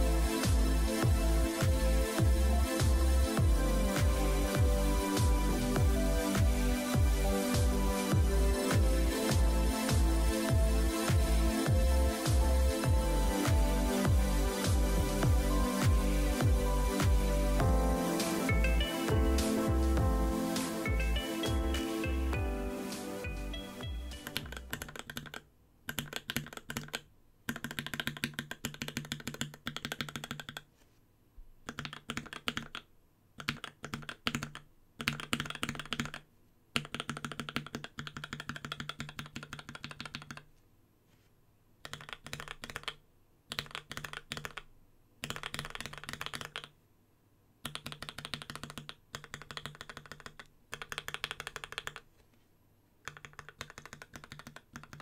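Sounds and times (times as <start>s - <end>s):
music: 0.0s - 24.9s
mechanical keyboard typing: 24.1s - 30.7s, 31.6s - 40.5s, 41.8s - 46.7s, 47.6s - 52.1s, 53.0s - 55.0s.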